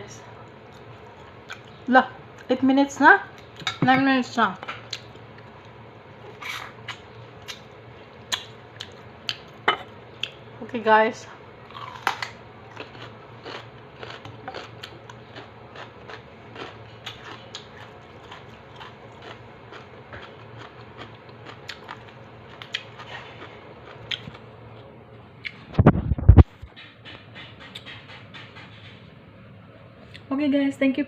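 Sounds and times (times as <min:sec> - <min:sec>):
crunchy chewing: 0:00.4 - 0:02.5, 0:11.6 - 0:25.6.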